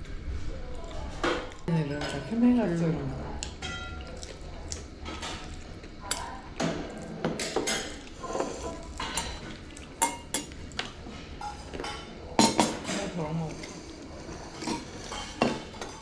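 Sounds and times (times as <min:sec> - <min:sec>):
cutlery clinking on dishes: 0:05.1 - 0:13.2, 0:14.5 - 0:16.0.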